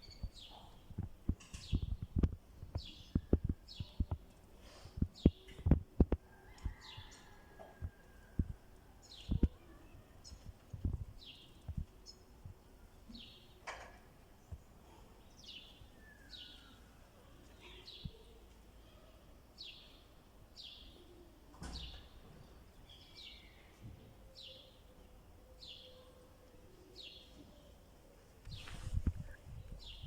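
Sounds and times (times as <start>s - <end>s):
small bird chirping: 0.0s - 4.3s.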